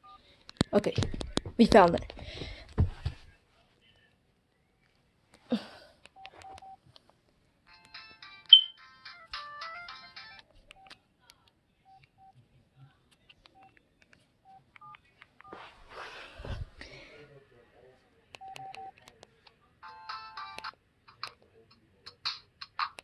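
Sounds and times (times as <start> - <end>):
electronic phone ringtone melody: 7.7 - 10.4
phone key-press beeps: 8.5 - 8.8, 18.4 - 19.0.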